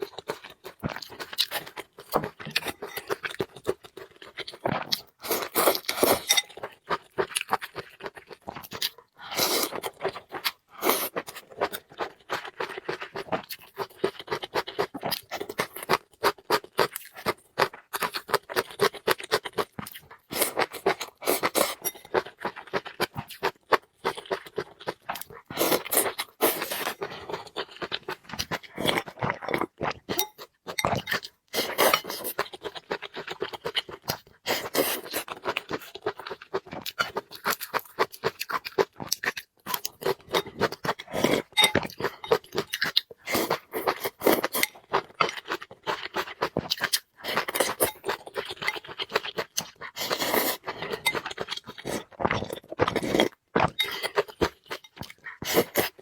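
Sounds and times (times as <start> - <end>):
chewing and crunching food: 0.0 - 56.0.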